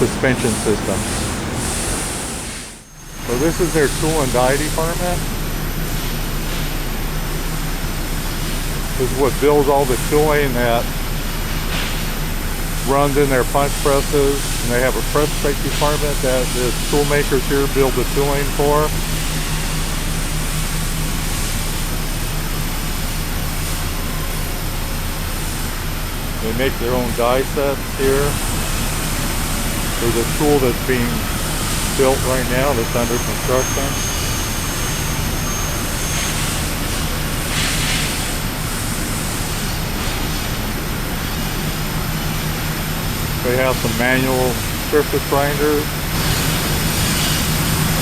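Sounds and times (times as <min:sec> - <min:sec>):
hiss: 0:00.0 - 0:07.5, 0:25.2 - 0:41.7, 0:43.6 - 0:48.0
air and machinery noise: 0:00.0 - 0:48.0
low electrical hum: 0:00.0 - 0:48.0.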